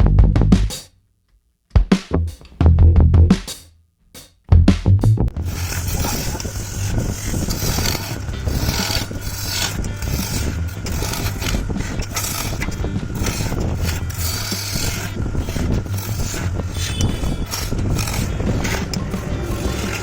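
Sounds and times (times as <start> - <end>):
turning tool cutting wood: 5.3 - 20.0
wood lathe motor humming: 5.3 - 20.0.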